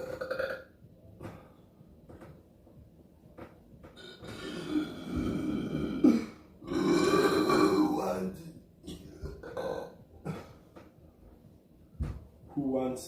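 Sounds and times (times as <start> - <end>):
person burping: 0.0 - 0.7, 4.0 - 8.1, 8.9 - 10.6.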